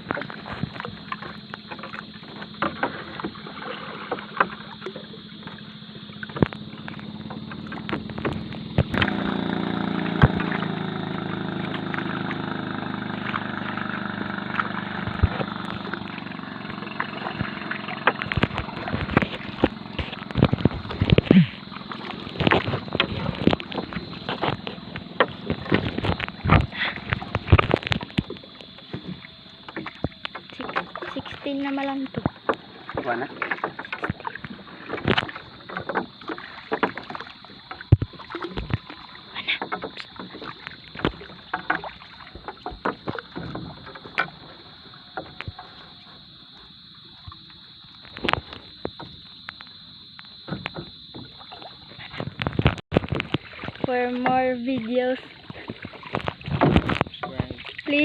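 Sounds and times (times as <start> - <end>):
boat motor hum: 0.0 - 58.0
knocks and thumps on boat: 0.0 - 58.0.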